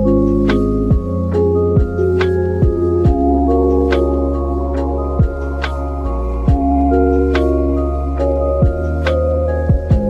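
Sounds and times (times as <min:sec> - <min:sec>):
keyboard chords: 0:00.0 - 0:10.0
deep drum beat: 0:00.9 - 0:03.5, 0:05.2 - 0:05.6, 0:06.5 - 0:07.0, 0:08.6 - 0:09.0, 0:09.7 - 0:10.0.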